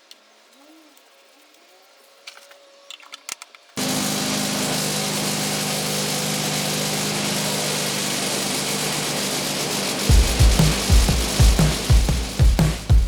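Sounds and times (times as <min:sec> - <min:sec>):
gas engine running steadily: 0:03.8 - 0:13.0
electronic music with heavy bass: 0:10.1 - 0:13.0.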